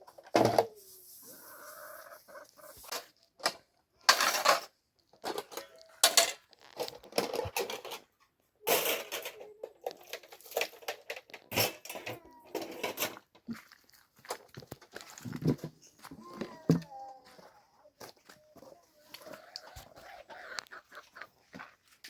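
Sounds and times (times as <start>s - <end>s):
household objects clattering: 2.9s - 8.1s, 8.7s - 13.5s.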